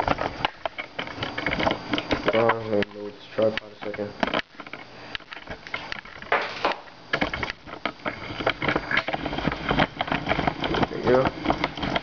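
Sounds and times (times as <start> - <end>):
tripod scraping: 0.0 - 12.0.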